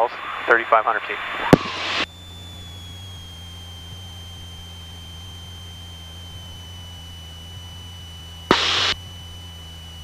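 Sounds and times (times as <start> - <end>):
airplane engine and propeller drone: 0.0 - 10.0
high-pitched whine: 0.0 - 10.0
loud burst of hiss: 8.5 - 9.0.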